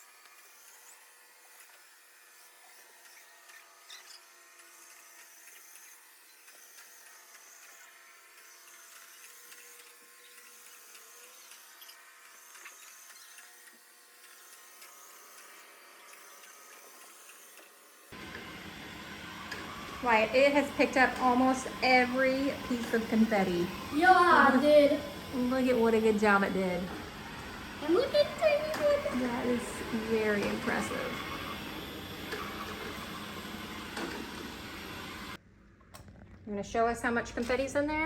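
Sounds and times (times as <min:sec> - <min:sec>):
robot vacuum motor whine: 0:00.0 - 0:35.4.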